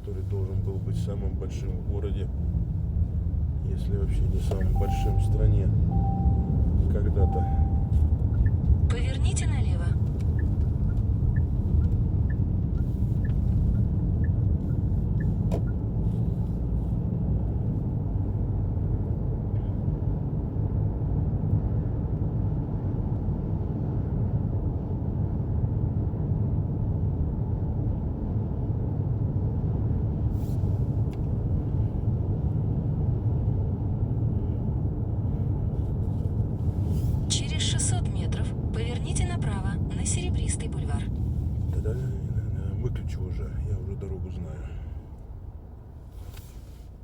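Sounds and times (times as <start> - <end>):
turn signal ticking: 0.0 - 18.2
car engine and tyres rumble: 0.0 - 47.0.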